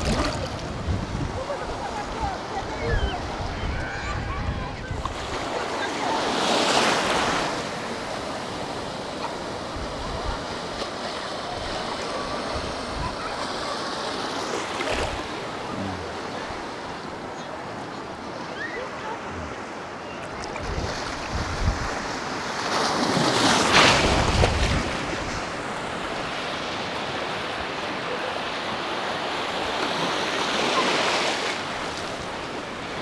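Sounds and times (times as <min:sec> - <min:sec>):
wind buffeting microphone: 0:00.0 - 0:05.4, 0:20.5 - 0:22.2, 0:23.9 - 0:25.7
surf breaking on a beach: 0:00.0 - 0:33.0.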